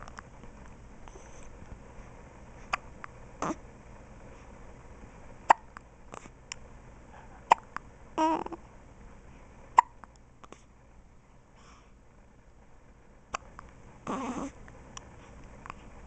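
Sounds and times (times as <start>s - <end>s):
baby hiccuping: 5.5s - 5.8s, 7.5s - 8.6s, 9.8s - 10.0s.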